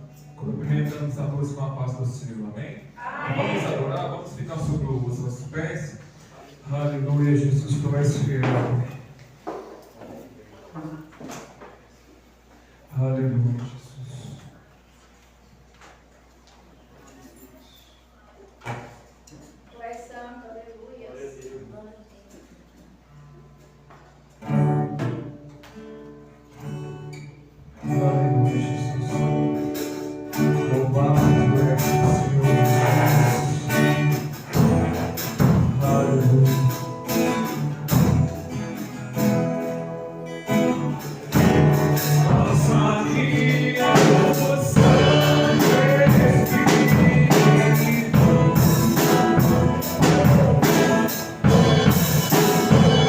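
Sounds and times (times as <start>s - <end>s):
praise band playing: 0.0s - 9.0s, 23.6s - 53.0s
people singing: 30.6s - 34.7s, 40.5s - 53.0s.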